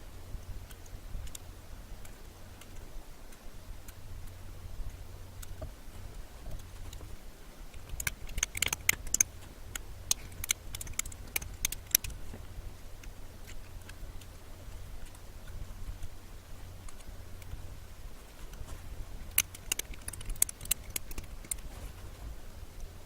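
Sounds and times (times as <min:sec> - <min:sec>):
low steady hum: 0:00.0 - 0:23.0
mechanical keyboard typing: 0:07.8 - 0:09.3, 0:19.3 - 0:21.6.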